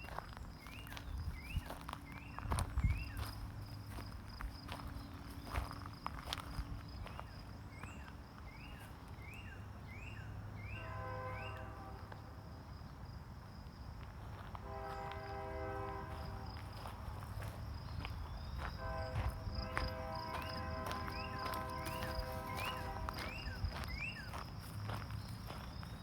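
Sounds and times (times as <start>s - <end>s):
distant train horn: 10.5s - 12.4s, 14.5s - 17.5s, 18.5s - 24.2s.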